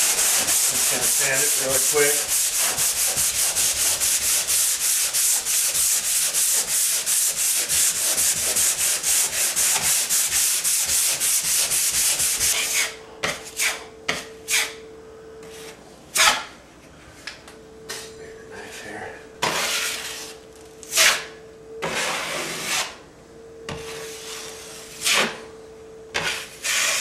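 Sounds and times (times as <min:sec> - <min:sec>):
sanding strokes on a wall: 0:00.0 - 0:12.9, 0:21.8 - 0:23.0, 0:26.2 - 0:27.0.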